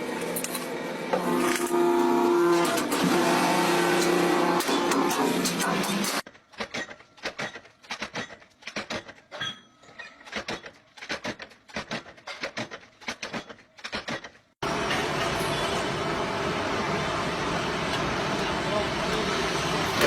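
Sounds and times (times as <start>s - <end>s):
heavy machine noise: 14.6s - 20.0s.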